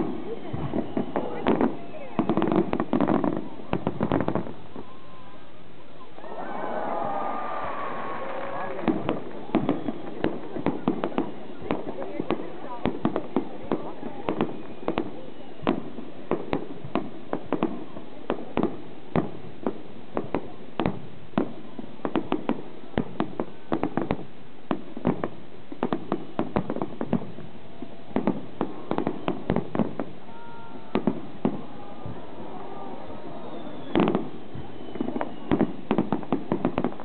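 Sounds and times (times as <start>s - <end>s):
fireworks bangs and cracks: 0.0s - 4.9s, 6.3s - 37.0s.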